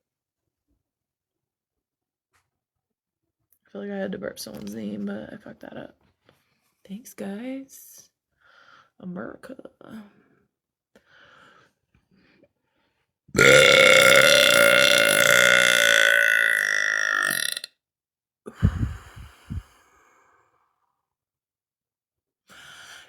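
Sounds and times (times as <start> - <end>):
long loud burp: 13.4 - 17.7.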